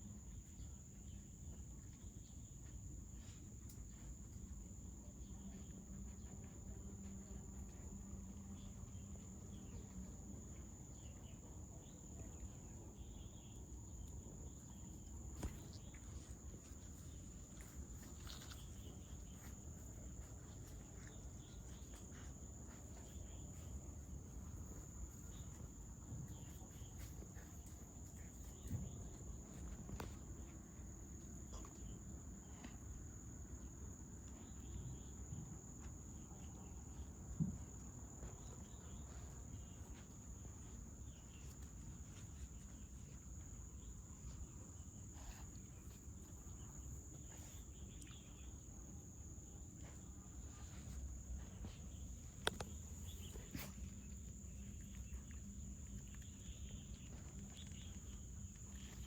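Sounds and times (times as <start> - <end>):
insects trilling: 38.0 - 59.0.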